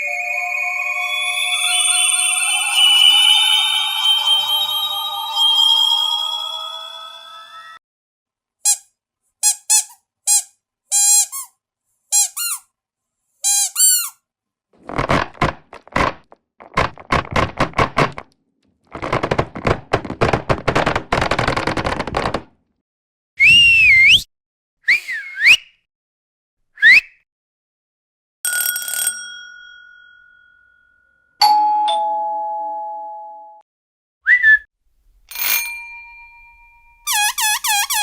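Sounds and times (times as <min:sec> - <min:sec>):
short high squeaks: 0:08.7 - 0:11.5, 0:12.1 - 0:12.7, 0:13.4 - 0:14.2, 0:37.0 - 0:38.0
swooping whistles: 0:23.4 - 0:24.3, 0:24.9 - 0:25.8, 0:34.2 - 0:34.7.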